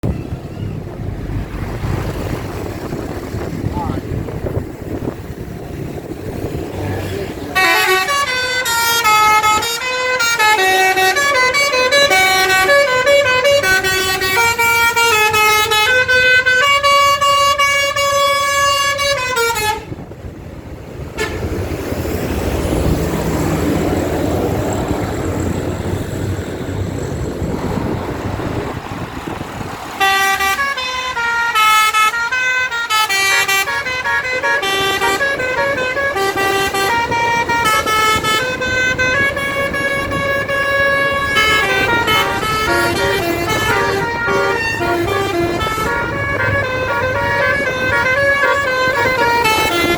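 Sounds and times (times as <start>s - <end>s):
rushing noise: 0.0s - 9.5s
musical bus horn melody: 7.5s - 20.0s, 21.1s - 21.6s, 29.9s - 49.9s.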